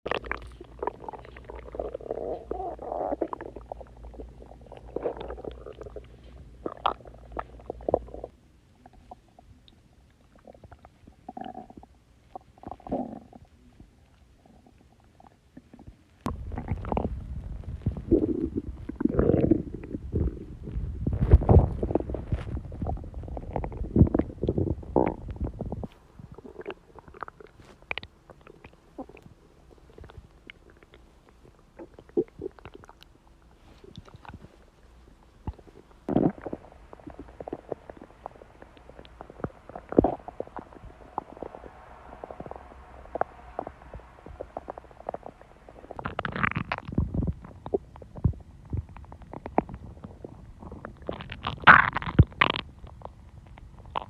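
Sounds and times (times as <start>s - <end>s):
low steady hum: 0.0s - 54.0s
stomach growling and gurgling: 0.0s - 54.0s.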